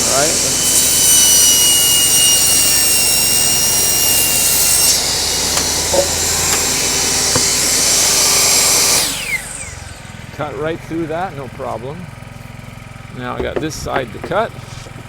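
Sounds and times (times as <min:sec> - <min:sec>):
table saw cutting wood: 0:00.0 - 0:10.2, 0:13.3 - 0:15.0.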